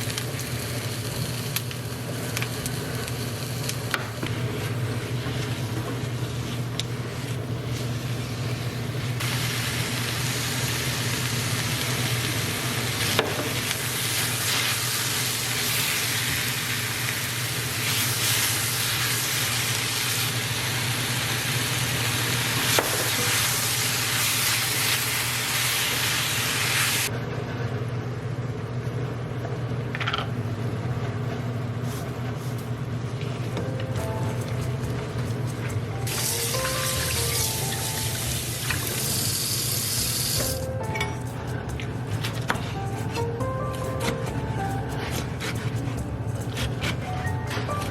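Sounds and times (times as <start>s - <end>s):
food sizzling in a frying pan: 0.0s - 7.3s, 7.9s - 27.1s, 36.0s - 40.6s.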